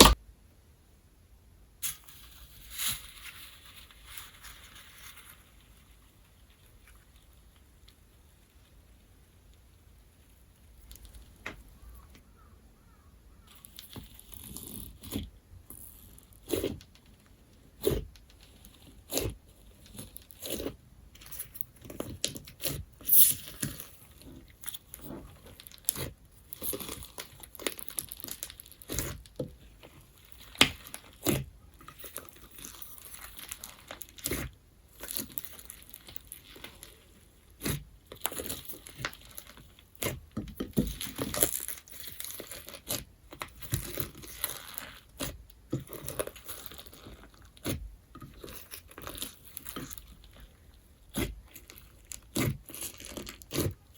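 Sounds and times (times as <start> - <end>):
crunchy slime squeezed by hand: 17.8 - 53.9.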